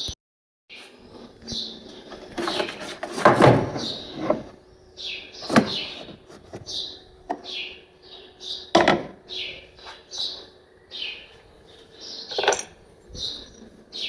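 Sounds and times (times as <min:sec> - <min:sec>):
small bird chirping: 0:00.0 - 0:02.8, 0:03.8 - 0:14.0
knocks and clunks: 0:02.1 - 0:04.6, 0:08.7 - 0:09.2.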